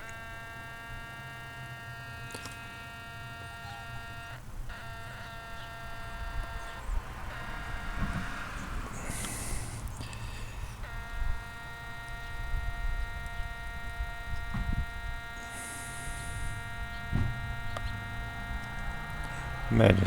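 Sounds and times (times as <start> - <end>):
low hum: 0.0 - 20.0
radio high-pitched squeal: 15.4 - 20.0.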